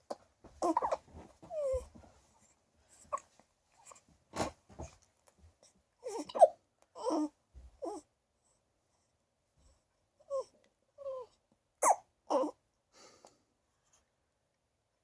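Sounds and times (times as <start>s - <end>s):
baby hiccuping: 0.6s - 1.0s, 11.8s - 12.5s
baby whimpering and cooing: 0.6s - 2.0s, 6.0s - 8.1s, 10.2s - 12.6s.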